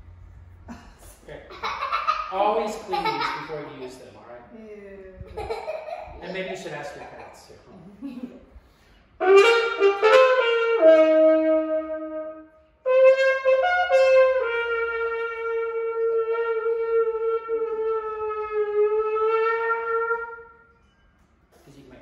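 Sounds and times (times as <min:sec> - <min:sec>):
muted brass horn notes: 0:09.2 - 0:20.8.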